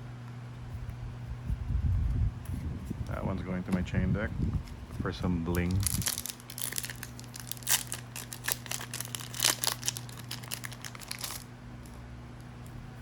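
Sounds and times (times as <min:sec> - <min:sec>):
foil wrapper crinkling and tearing: 0:05.5 - 0:12.0.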